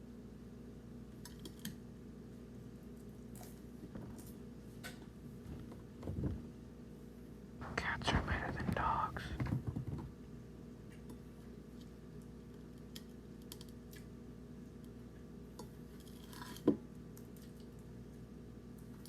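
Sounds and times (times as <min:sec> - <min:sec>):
person whispering: 0:07.6 - 0:09.5.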